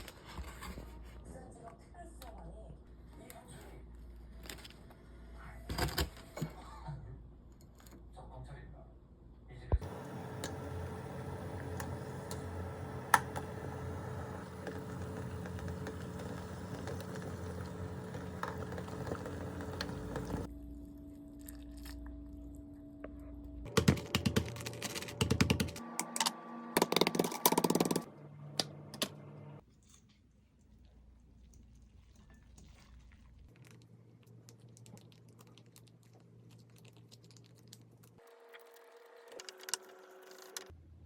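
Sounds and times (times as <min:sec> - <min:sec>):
steady low hum: 0:09.5 - 0:23.7.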